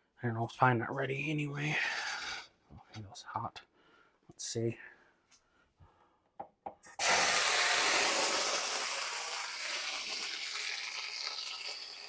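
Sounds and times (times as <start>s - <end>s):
water sizzling in hot pan: 7.0s - 12.0s.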